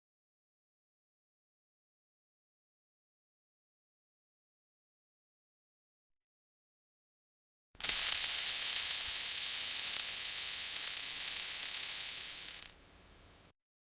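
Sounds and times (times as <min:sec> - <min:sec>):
welding arc hissing: 0:07.8 - 0:12.8.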